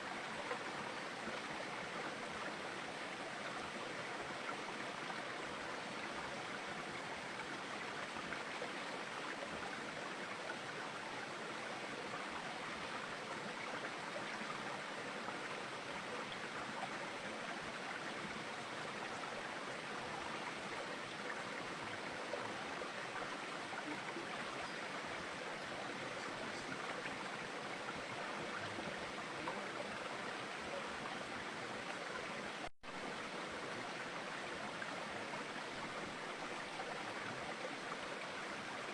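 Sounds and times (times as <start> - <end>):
rushing running water: 0.0 - 38.9.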